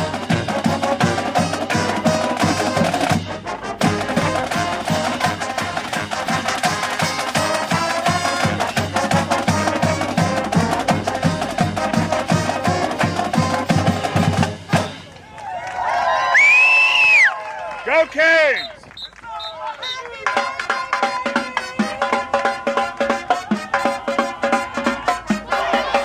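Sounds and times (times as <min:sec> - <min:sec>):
fast drum beat: 0:00.0 - 0:15.1
marching band playing: 0:00.0 - 0:15.4, 0:17.8 - 0:26.0.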